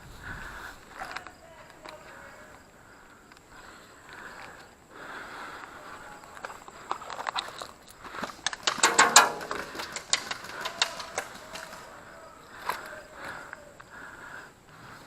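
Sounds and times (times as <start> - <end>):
clicks and knocks: 8.5 - 11.8.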